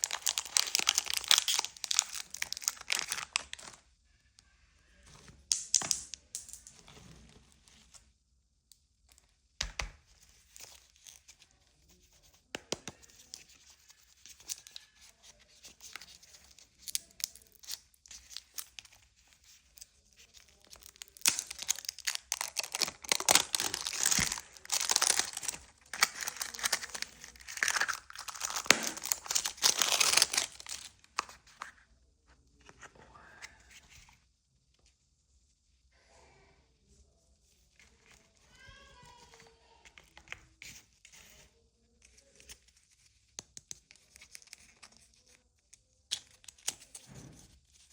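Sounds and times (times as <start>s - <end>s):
candy wrapper crinkling and tearing: 0.0s - 3.8s, 5.4s - 6.7s, 12.6s - 31.7s, 42.0s - 47.1s.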